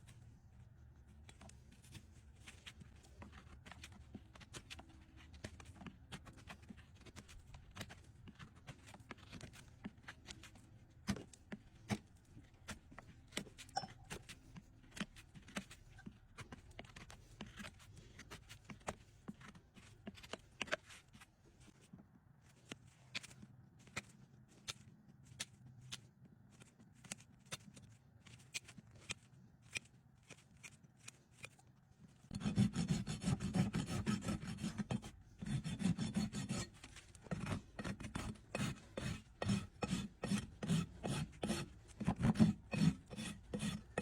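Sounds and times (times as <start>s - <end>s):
tools clicking and scraping hoof: 26.6s - 44.0s.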